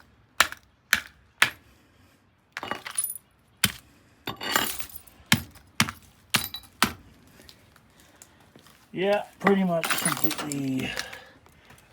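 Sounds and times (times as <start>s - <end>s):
hard objects knocking and clinking: 2.6s - 7.0s, 9.4s - 11.2s.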